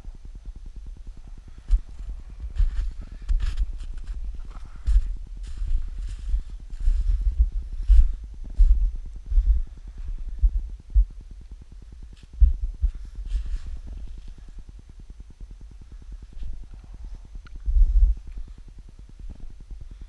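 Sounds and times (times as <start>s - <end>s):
low thumps and rumbles: 0.0s - 20.0s.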